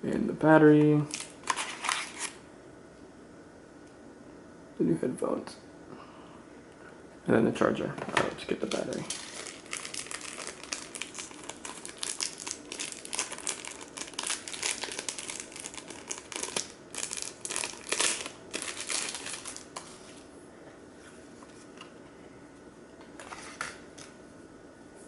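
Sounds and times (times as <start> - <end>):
plastic packaging crinkling: 1.0 - 2.4, 8.5 - 20.2.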